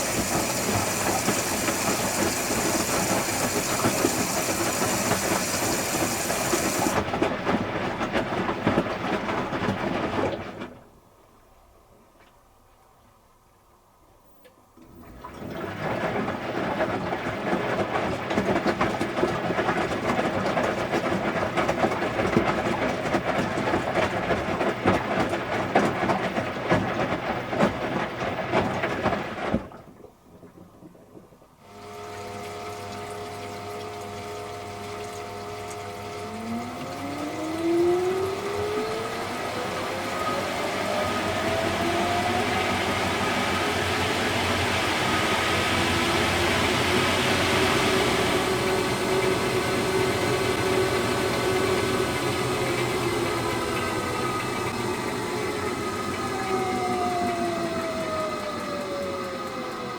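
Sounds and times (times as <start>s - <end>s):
rising whine of spinning drum: 0.0s - 7.0s, 36.2s - 59.9s
washing machine motor hum: 0.0s - 10.9s, 14.8s - 59.9s
water rushing through washing machine: 0.0s - 11.6s, 14.7s - 59.9s.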